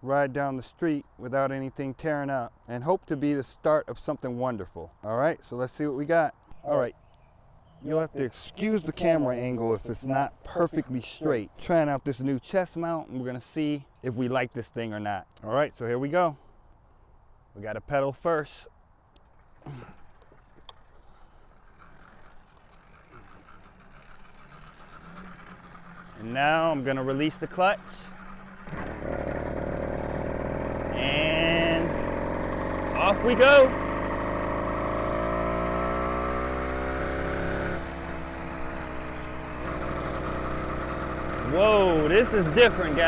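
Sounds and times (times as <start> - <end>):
bicycle chain rattling and ticking: 19.2 - 43.0.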